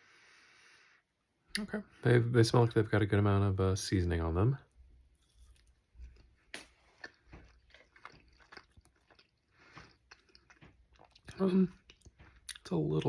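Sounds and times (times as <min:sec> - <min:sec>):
chewing mouth clicks: 0:05.5 - 0:12.7.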